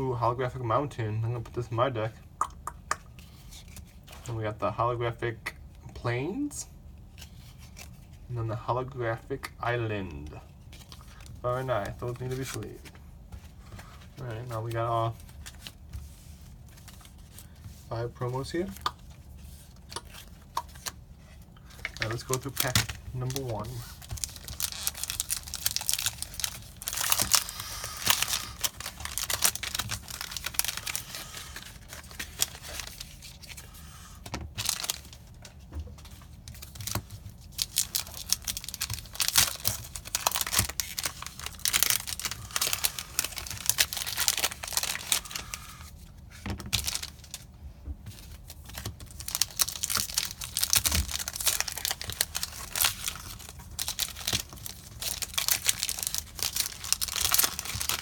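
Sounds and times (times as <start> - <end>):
foil wrappers tearing and crinkling: 21.6 - 33.9, 34.6 - 35.4, 36.4 - 47.5, 48.2 - 58.0.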